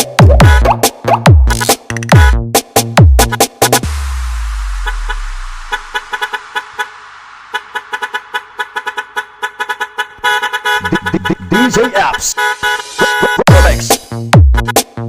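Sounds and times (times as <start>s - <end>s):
electronic dance music: 0.0s - 9.2s, 10.7s - 15.0s
stuttering truck horn blasts: 4.8s - 13.8s, 14.5s - 14.9s.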